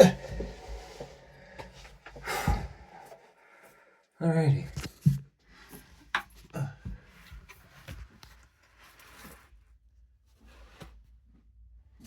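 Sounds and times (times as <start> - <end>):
rustling: 7.1 - 9.7.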